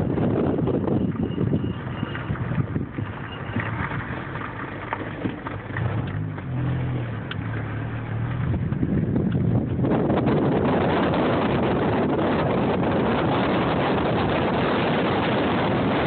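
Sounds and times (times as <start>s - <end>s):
engine hum: 0.0s - 16.0s
road and wind noise: 0.0s - 16.0s
faint high wheel squeaks: 0.9s - 5.4s.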